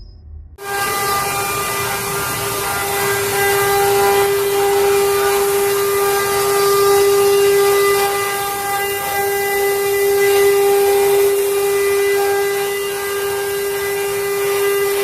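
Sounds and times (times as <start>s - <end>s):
router spindle carving wood: 0.6s - 15.0s.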